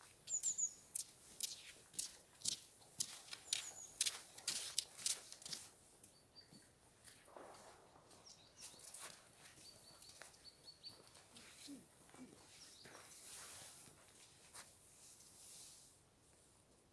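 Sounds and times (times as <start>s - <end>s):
small songbird calls: 0.3s - 1.1s, 3.3s - 4.2s.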